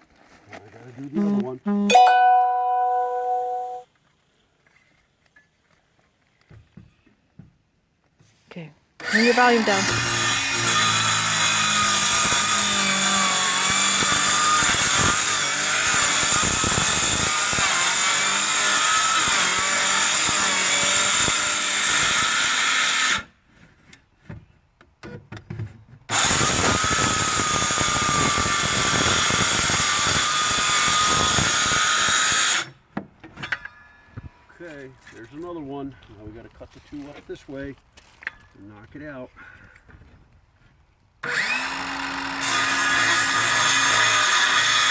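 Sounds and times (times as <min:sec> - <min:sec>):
power saw cutting wood: 0:09.0 - 0:23.3, 0:26.1 - 0:32.8, 0:41.2 - 0:44.9.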